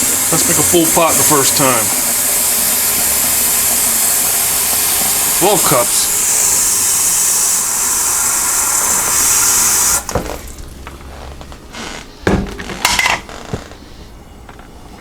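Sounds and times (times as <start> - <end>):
tap water filling a carafe: 0.0 - 10.9
handling knocks and clunks: 10.1 - 15.0.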